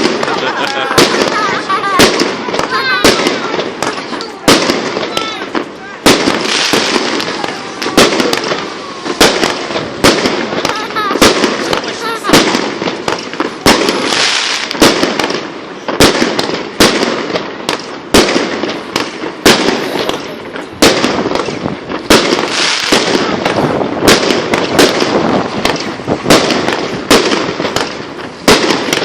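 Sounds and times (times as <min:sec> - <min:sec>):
firework bangs: 0:00.0 - 0:29.0
firework crackling: 0:00.0 - 0:29.0.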